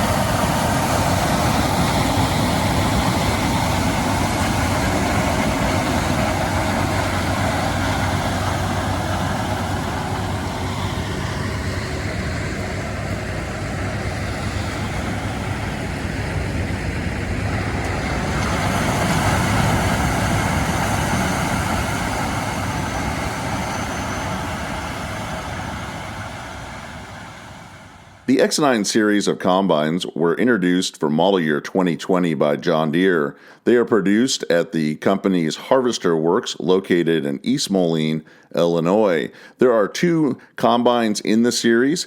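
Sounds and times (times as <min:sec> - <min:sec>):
combine harvester engine droning: 0:00.0 - 0:28.5.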